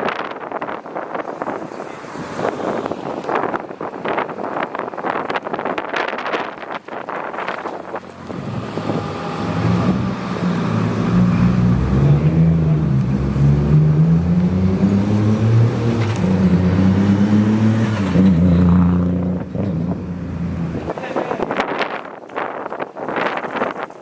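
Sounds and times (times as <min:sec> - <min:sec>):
deep car engine: 0:07.7 - 0:20.9.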